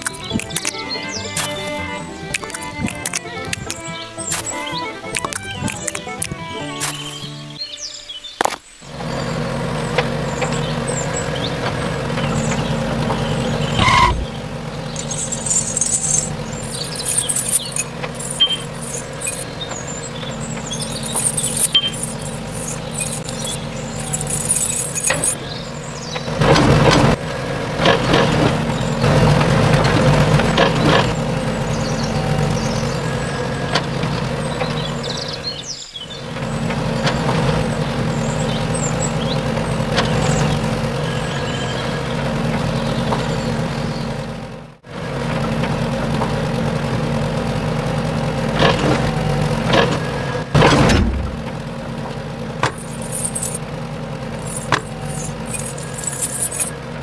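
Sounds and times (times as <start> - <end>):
clanks: 0.0 - 7.2, 9.0 - 27.2, 27.8 - 44.3, 48.4 - 57.0
engine drone: 0.0 - 57.0.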